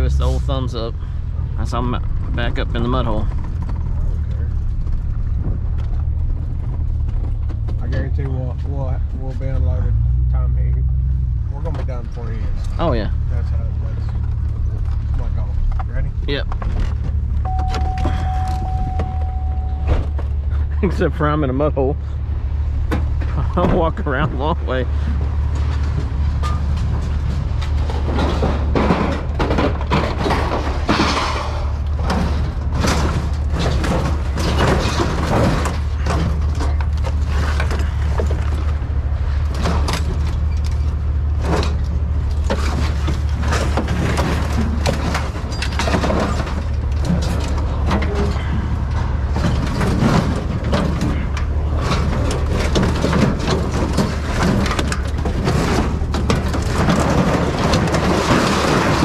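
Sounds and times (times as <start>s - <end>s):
steady low hum: 0.0s - 44.6s
scrap steel clanking: 24.9s - 59.0s.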